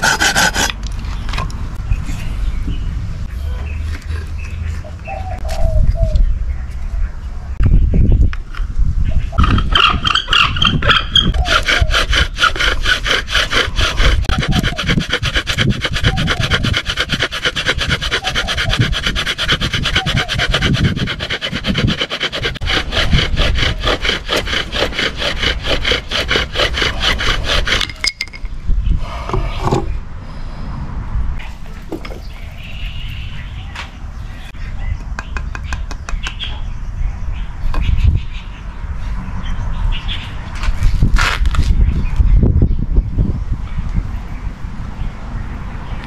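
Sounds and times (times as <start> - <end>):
wooden spindle grinding and squealing: 0.0 - 0.8, 9.4 - 28.3, 31.4 - 33.5.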